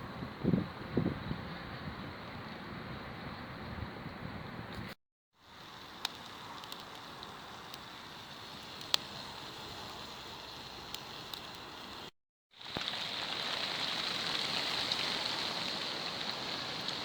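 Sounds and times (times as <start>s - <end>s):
hiss of falling rain: 5.4s - 17.0s
faint ticks: 8.6s - 9.1s.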